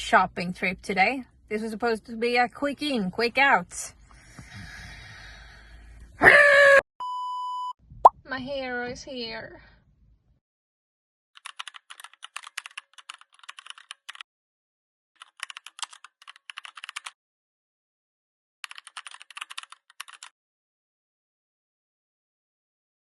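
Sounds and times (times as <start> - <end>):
rapid keyboard typing clicks: 11.4 - 14.2, 15.2 - 17.2, 18.6 - 20.3.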